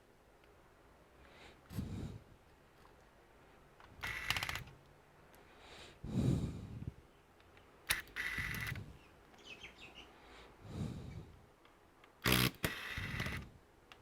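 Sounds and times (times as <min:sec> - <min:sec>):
laptop parts clicking and scraping: 0:04.0 - 0:04.7.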